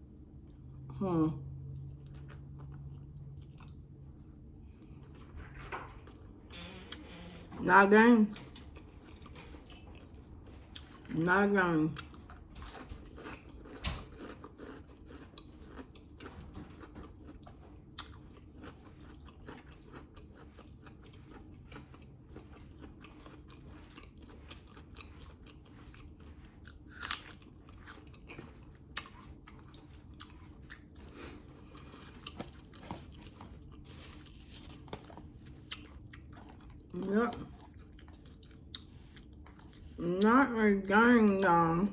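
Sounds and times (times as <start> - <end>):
wet chewing with mouth clicks: 1.7 - 5.0, 11.9 - 40.2
food crunches: 12.0 - 39.8.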